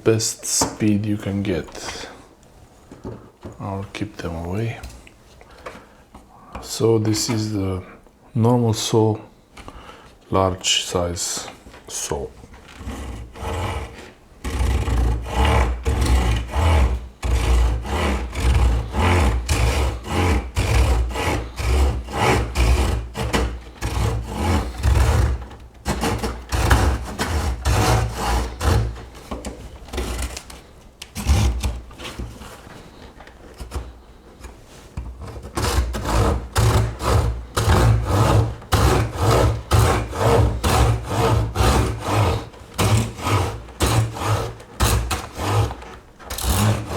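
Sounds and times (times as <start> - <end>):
saw cutting branch: 12.8 - 29.3, 35.4 - 46.9.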